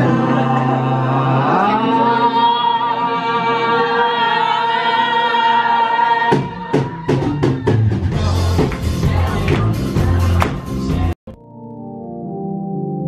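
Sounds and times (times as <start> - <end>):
drum kit beat: 6.3 - 11.2.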